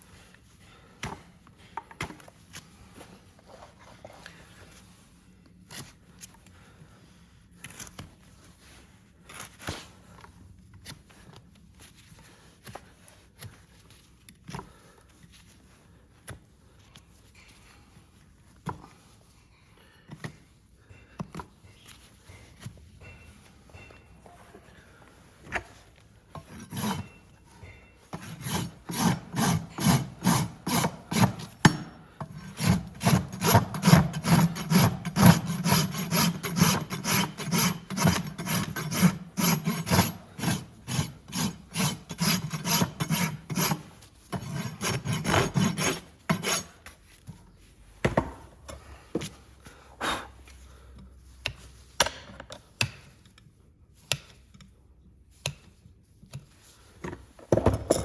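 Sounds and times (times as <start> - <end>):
rasp filing a hoof: 25.5 - 47.0.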